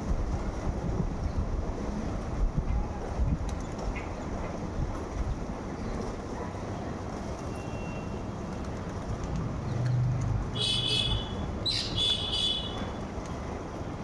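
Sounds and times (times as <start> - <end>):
short high bird calls: 10.6 - 13.0.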